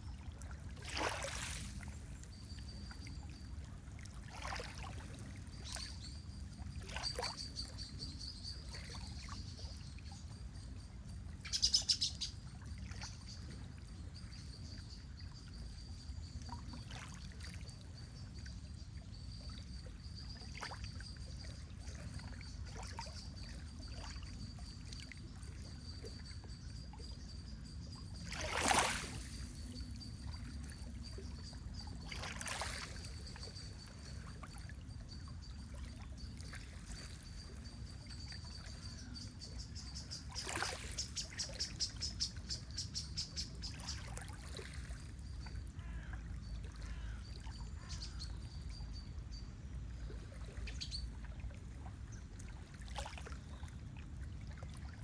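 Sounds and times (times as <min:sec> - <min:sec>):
swishes of water: 0:00.0 - 0:07.8, 0:28.2 - 0:39.0, 0:39.9 - 0:42.5, 0:43.6 - 0:45.2, 0:49.9 - 0:55.0
water lapping and sloshing: 0:00.0 - 0:55.0.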